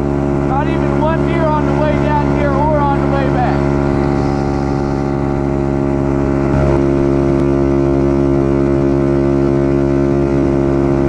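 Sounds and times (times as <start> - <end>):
dirt bike engine droning: 0.0 - 11.0.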